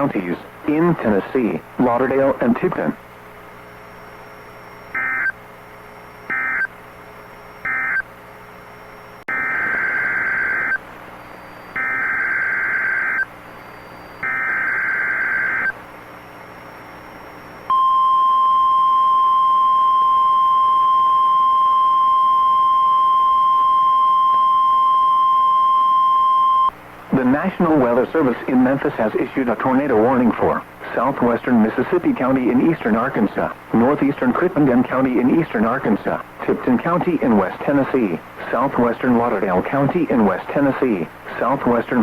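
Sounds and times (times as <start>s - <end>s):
receiver hum: 0.0s - 42.0s
buzzing data tones: 3.6s - 21.1s
steady warning alarm tone: 3.9s - 5.4s, 6.1s - 6.8s, 7.4s - 8.1s, 8.8s - 15.8s.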